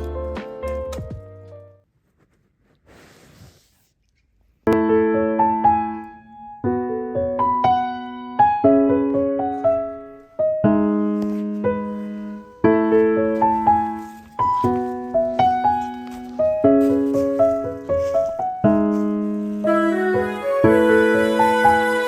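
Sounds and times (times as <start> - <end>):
piano music: 0.0 - 1.8, 4.7 - 22.0.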